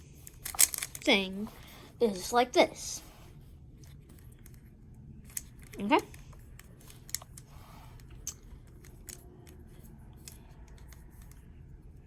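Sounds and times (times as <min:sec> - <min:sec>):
puzzle cube plastic clicks: 0:05.2 - 0:11.5.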